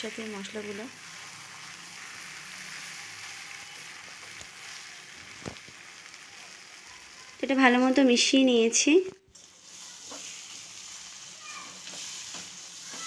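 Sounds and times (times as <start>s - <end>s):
food sizzling in oil: 0.0s - 13.0s.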